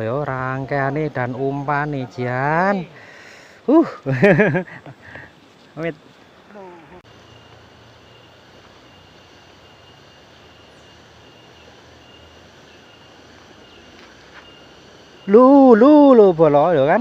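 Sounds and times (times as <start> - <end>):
outdoor rushing hiss: 0.0 - 17.0
faint high steady tone: 5.5 - 17.0.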